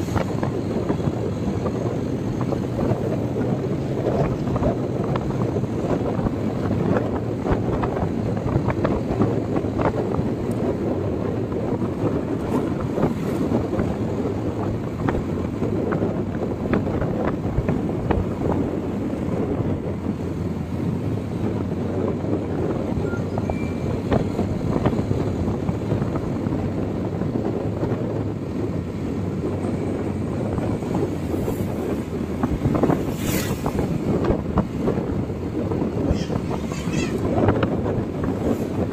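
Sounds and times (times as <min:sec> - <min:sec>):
vehicle road noise: 0:00.0 - 0:38.9
wind buffeting microphone: 0:00.0 - 0:38.9.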